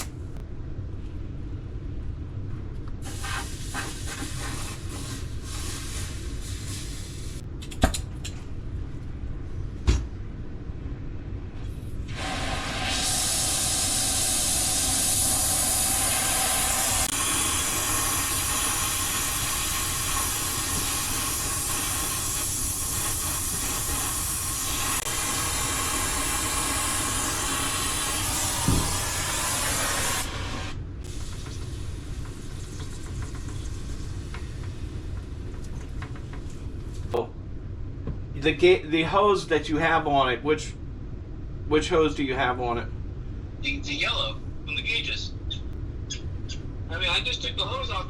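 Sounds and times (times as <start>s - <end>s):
compressed gas hissing from hose: 3.0s - 7.4s, 12.1s - 35.1s.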